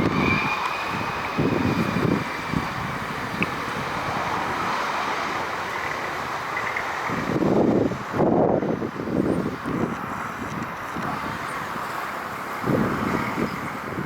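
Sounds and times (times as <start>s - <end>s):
jet engines roaring: 0.0s - 14.0s
wind buffeting microphone: 0.0s - 14.0s.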